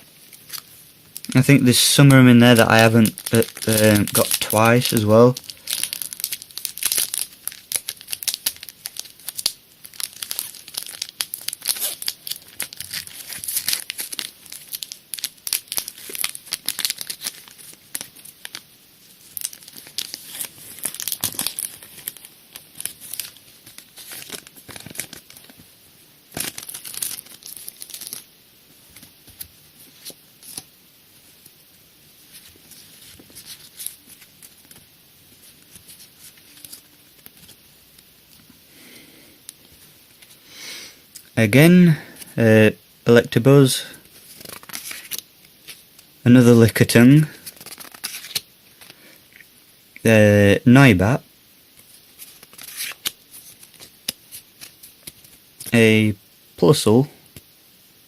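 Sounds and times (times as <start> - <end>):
foil wrapper tearing and crinkling: 0.4 - 25.6, 26.3 - 28.3, 32.3 - 37.6, 44.1 - 49.4, 51.8 - 55.8.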